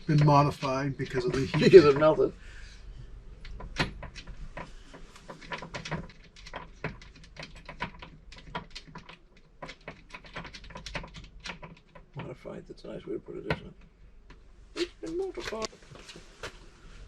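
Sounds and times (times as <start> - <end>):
small plastic parts clicking: 3.4 - 12.2.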